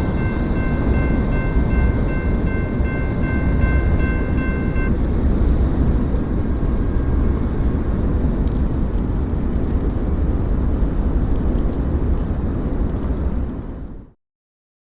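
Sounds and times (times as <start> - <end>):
freight train rumbling past: 0.0 - 14.0.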